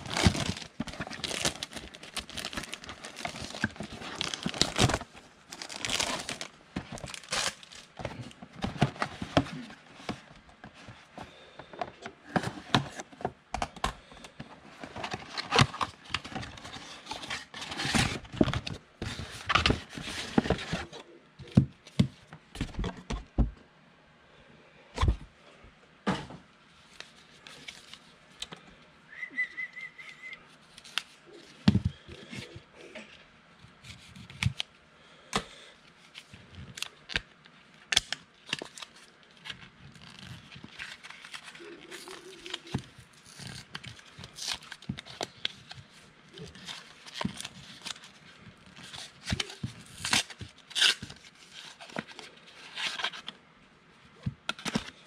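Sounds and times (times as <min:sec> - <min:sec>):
plastic wrap crinkling and tearing: 0:00.0 - 0:08.3, 0:37.9 - 0:53.3.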